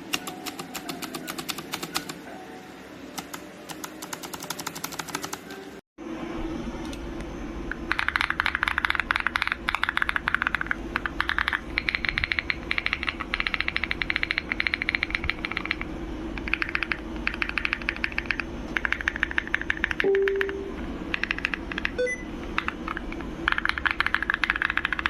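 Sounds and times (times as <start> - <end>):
mechanical keyboard typing: 0.0 - 2.2, 3.1 - 5.6, 7.9 - 22.0, 22.6 - 25.0
steady low hum: 6.0 - 25.0.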